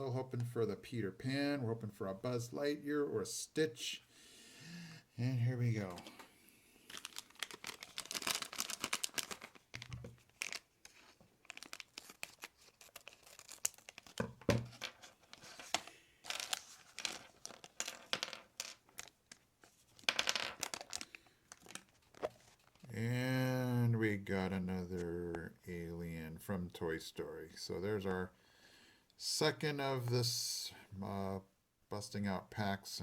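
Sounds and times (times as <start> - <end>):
plastic bag tearing and crinkling: 6.9 - 17.8.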